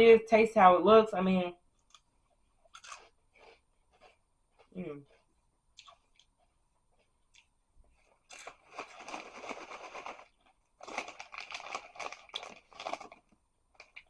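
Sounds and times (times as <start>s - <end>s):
crunching snack fries: 2.6s - 6.4s, 7.0s - 14.0s.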